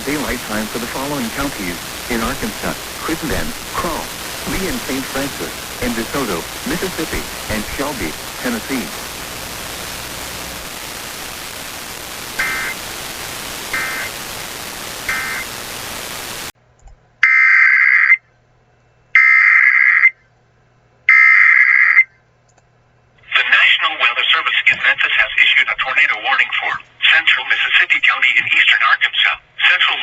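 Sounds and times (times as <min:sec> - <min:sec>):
digital data bursts: 0:00.0 - 0:16.5
radio static hiss: 0:00.0 - 0:16.6, 0:23.2 - 0:30.0
screechy data tone bursts: 0:12.2 - 0:12.8, 0:13.6 - 0:14.3, 0:15.0 - 0:15.6.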